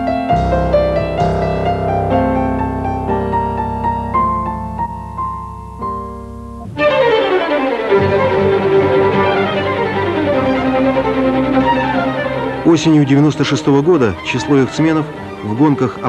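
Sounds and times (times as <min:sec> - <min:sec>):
piano and low strings: 0:00.0 - 0:16.0
bowed strings with violin: 0:06.6 - 0:16.0.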